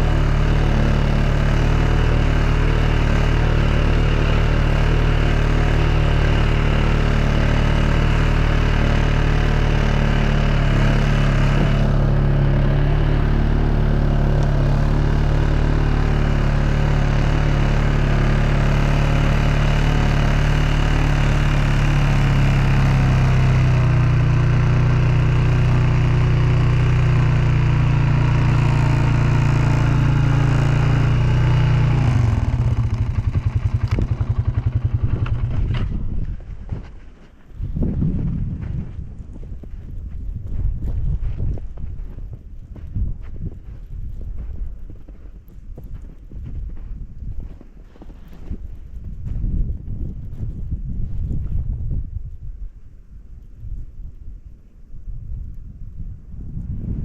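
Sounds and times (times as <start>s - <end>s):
tractor engine running: 0.0s - 49.6s.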